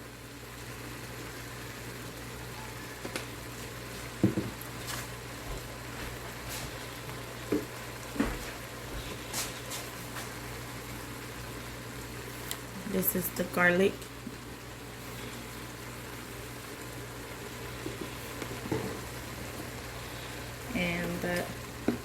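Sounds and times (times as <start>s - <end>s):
meat sizzling: 0.0s - 22.0s.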